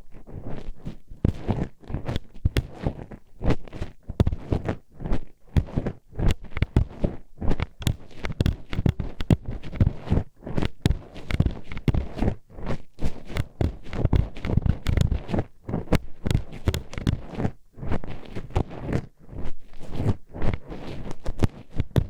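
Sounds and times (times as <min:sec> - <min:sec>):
scratchy rubbing on microphone: 0:00.0 - 0:22.0
hairpins tapping on microphone: 0:07.5 - 0:09.9.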